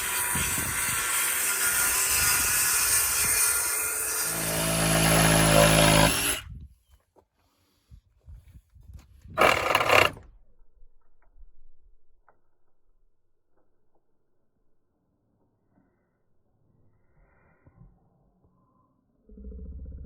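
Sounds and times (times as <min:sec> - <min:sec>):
electric power tool humming: 0:00.0 - 0:06.4, 0:09.4 - 0:10.2.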